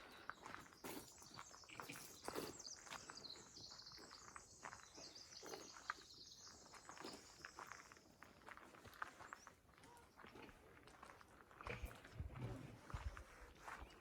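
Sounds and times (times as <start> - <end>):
footsteps on a trail: 0.0 - 14.0
small bird chirping: 0.2 - 8.0.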